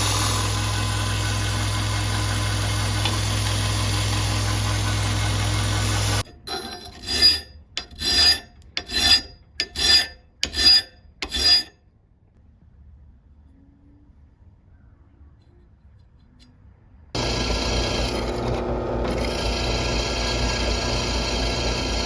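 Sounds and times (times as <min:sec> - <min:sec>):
machine hum: 0:00.0 - 0:06.3, 0:17.2 - 0:22.0
hand file rasping on steel: 0:00.0 - 0:11.8.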